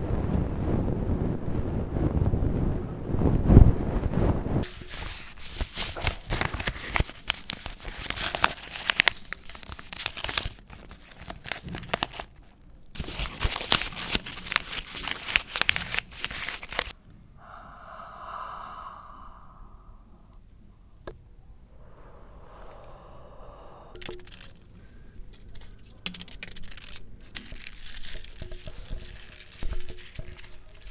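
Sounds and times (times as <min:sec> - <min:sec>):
dense crackling and crinkling: 0:00.1 - 0:17.0, 0:24.0 - 0:30.9.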